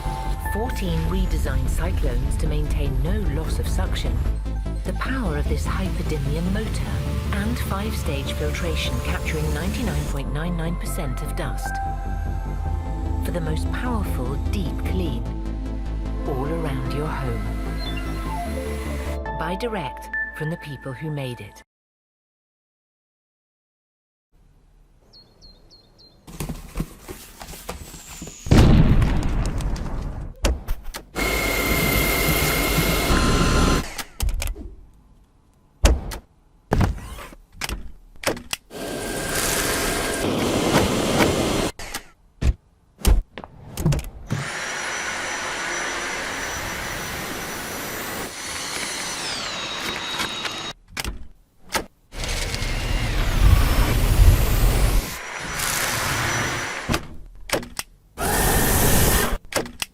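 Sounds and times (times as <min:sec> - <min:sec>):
loud boom: 0:28.5 - 0:29.6
vacuum cleaner motor whining: 0:31.2 - 0:33.8, 0:38.8 - 0:41.7, 0:44.4 - 0:50.8, 0:52.2 - 0:56.9.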